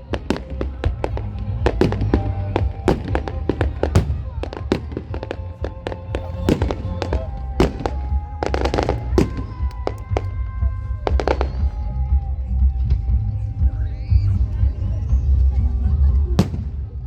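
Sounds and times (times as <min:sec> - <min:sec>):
fireworks bangs: 0:00.0 - 0:11.8, 0:16.3 - 0:17.0
music with held notes: 0:00.0 - 0:17.0.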